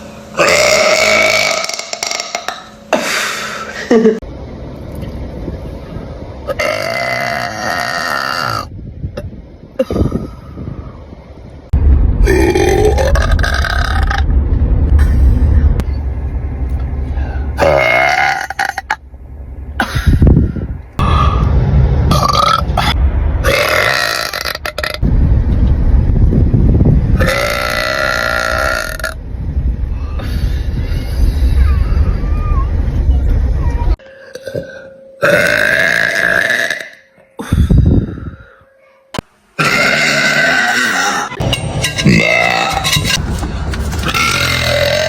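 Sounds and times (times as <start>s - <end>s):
loud drawn-out burps: 0.4s - 2.7s, 6.5s - 8.7s, 17.6s - 19.0s, 34.3s - 37.1s, 39.6s - 41.4s
low rumble: 4.2s - 34.0s, 41.3s - 45.0s.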